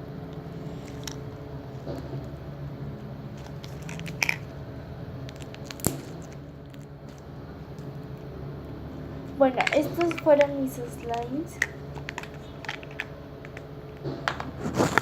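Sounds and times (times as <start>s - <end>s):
beaded slime crackling and popping: 5.2s - 7.2s.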